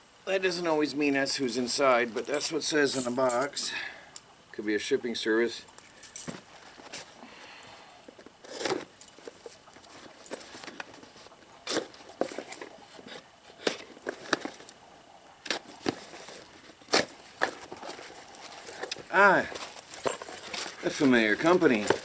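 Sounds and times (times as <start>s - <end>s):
packaging crackling and rustling: 8.2s - 14.8s, 15.4s - 22.0s.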